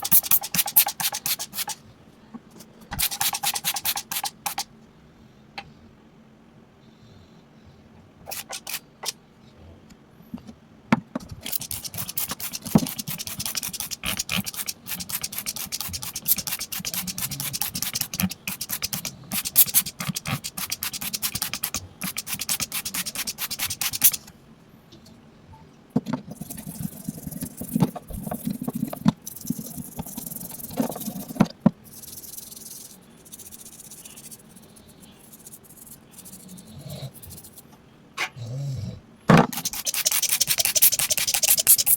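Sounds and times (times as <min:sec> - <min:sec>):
scraping and scrubbing strokes: 0:11.5 - 0:24.2, 0:39.5 - 0:41.9.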